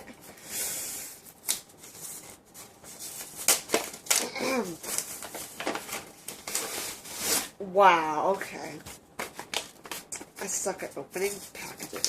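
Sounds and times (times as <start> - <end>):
plastic packaging crackling and snapping: 3.2 - 7.5, 9.2 - 10.3.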